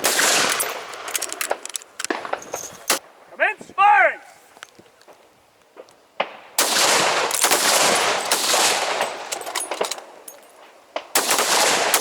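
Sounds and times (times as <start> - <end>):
rifle shots with rolling echo: 0.0 - 3.0, 6.2 - 10.2, 10.9 - 12.0.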